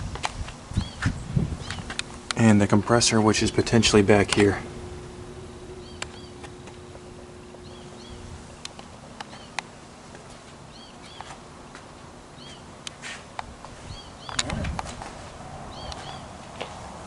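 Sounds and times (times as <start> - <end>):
low steady hum: 0.0 - 17.0
small bird chirping: 0.8 - 2.0, 5.7 - 6.7, 7.6 - 9.6, 10.7 - 11.3, 13.9 - 14.5, 15.7 - 16.4
sharp clicks: 6.0 - 6.8.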